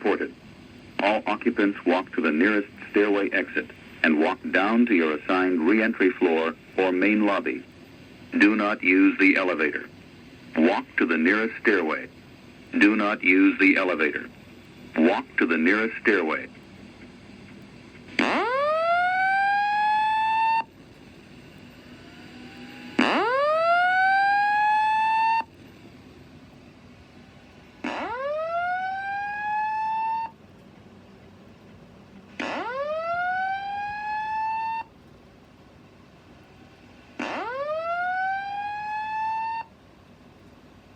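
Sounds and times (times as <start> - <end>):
fire alarm whoop tone: 18.2 - 20.7, 21.8 - 25.5, 27.8 - 30.4, 32.4 - 34.9, 36.5 - 39.7.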